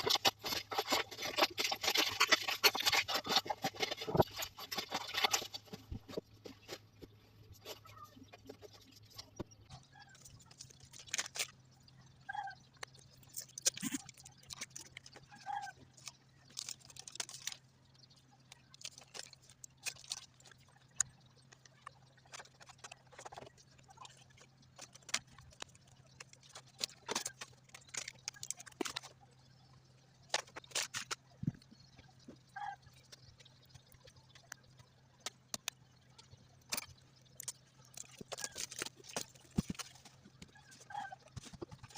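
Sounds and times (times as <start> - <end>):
hands handling packaging: 36.6 - 41.9.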